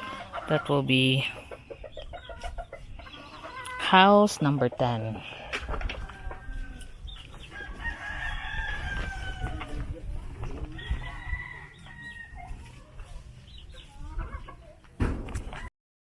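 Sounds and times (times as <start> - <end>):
rooster crowing: 7.5 - 9.6, 10.8 - 12.4
loud bump: 15.0 - 15.7.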